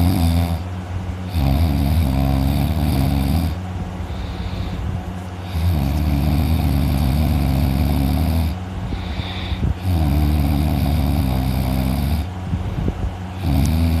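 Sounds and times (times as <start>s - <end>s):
person snoring heavily: 0.0s - 0.6s, 1.3s - 4.8s, 5.4s - 12.3s, 13.4s - 14.0s
quiet breaths: 4.0s - 7.2s, 8.8s - 9.9s.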